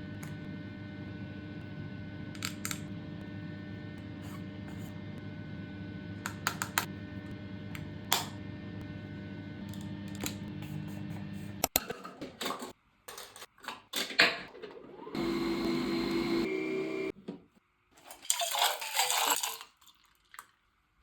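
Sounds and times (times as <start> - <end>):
low room hum: 0.0 - 11.7
sharp clicks and taps: 6.2 - 6.9.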